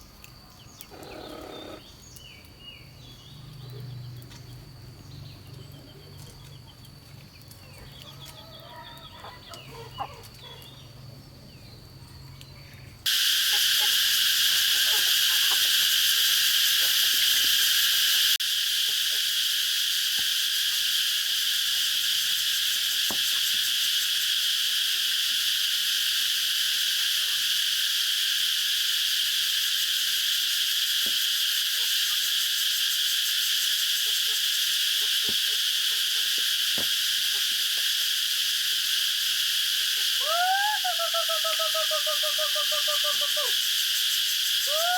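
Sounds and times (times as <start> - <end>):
insect chorus: 0.0 - 44.9.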